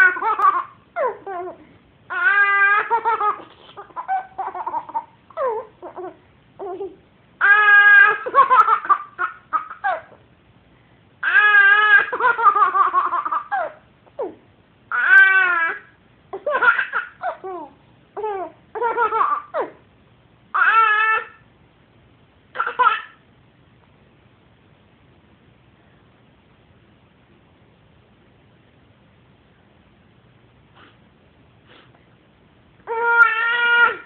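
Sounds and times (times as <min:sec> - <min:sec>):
baby squealing and laughing: 0:00.0 - 0:10.2, 0:11.2 - 0:19.8, 0:20.5 - 0:21.4, 0:32.9 - 0:34.0.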